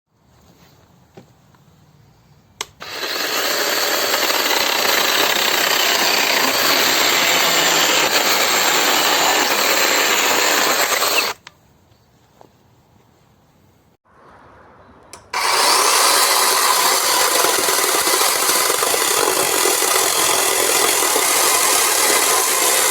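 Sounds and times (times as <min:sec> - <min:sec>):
electric chainsaw cutting wood: 0:02.7 - 0:11.4, 0:15.2 - 0:22.9.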